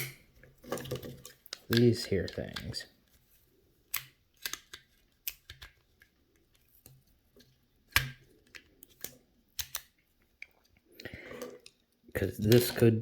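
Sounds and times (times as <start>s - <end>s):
plastic switch parts clicking: 3.9s - 6.1s, 7.9s - 10.0s.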